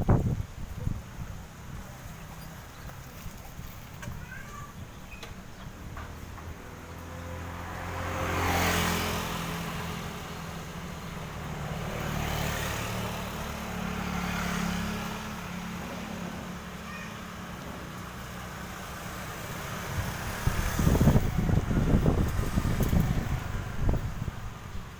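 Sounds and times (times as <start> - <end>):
wind buffeting microphone: 0.0 - 2.3, 19.4 - 24.9
vehicle engine and tyre noise: 0.0 - 24.9.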